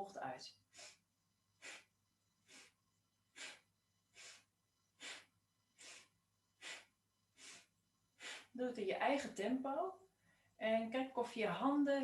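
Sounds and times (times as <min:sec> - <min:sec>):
person breathing sharply: 0:01.6 - 0:08.5.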